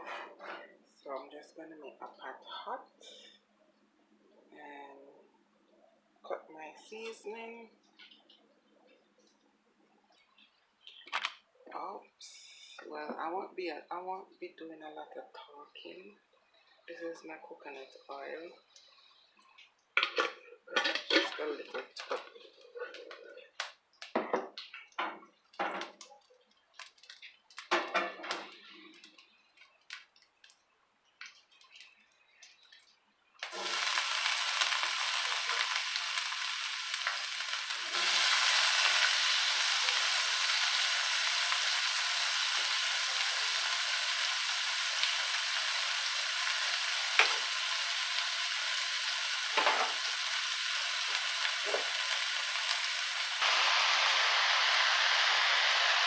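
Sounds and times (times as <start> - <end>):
food sizzling in oil: 33.4 - 56.0.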